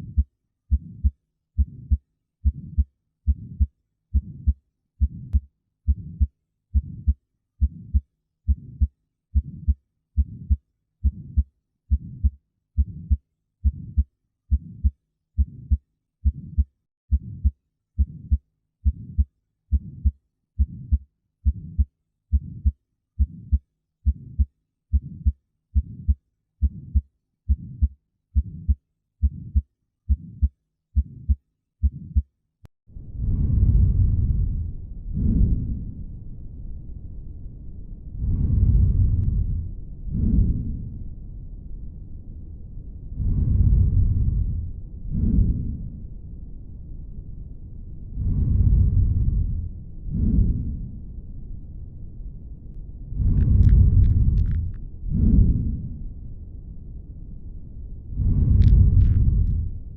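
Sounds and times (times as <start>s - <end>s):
heartbeat through stethoscope: 0.0s - 32.3s, 40.2s - 40.8s, 45.2s - 45.8s, 53.2s - 55.8s, 58.3s - 59.8s
low rushing noise: 33.0s - 59.9s.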